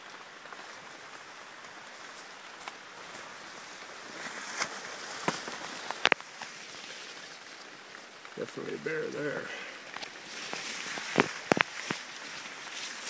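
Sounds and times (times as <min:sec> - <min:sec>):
steady rain hiss: 0:00.0 - 0:13.0.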